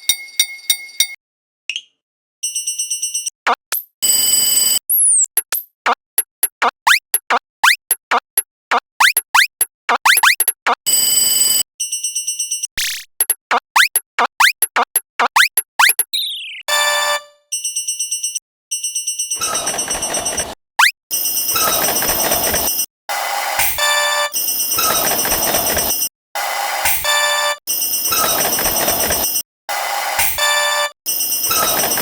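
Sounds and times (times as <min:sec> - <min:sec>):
pulsed electronic beeps: 0:04.9 - 0:11.0, 0:12.8 - 0:17.2, 0:19.6 - 0:21.0
short rising chirps: 0:15.4 - 0:16.7.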